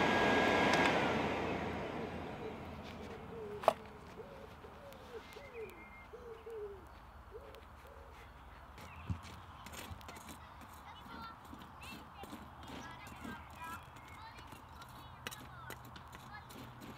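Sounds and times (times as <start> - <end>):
forge blower whine: 0.0 - 4.7
dove cooing: 2.3 - 8.6.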